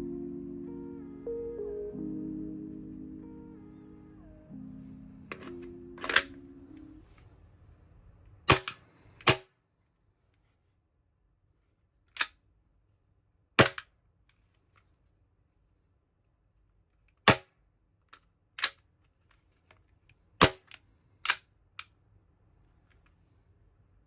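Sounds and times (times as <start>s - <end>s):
airsoft pistol shots: 8.5s - 9.5s.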